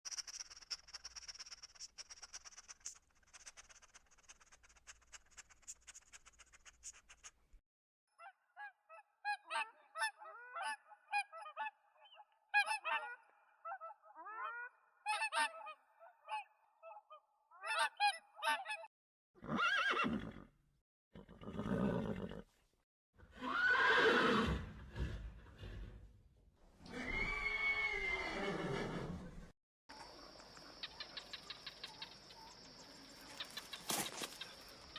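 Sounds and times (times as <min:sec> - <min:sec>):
horse whinnies: 0:19.4 - 0:20.5, 0:23.3 - 0:26.0, 0:26.8 - 0:29.4.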